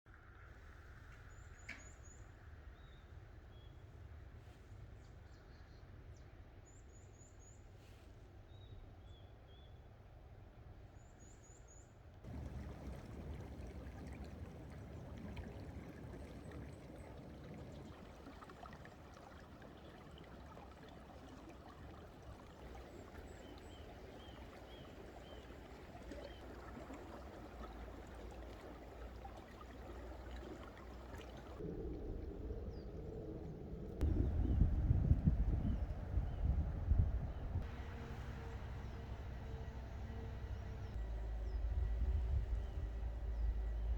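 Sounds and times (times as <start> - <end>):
small birds chirping: 11.0 - 31.6
stream water rushing: 12.3 - 31.6.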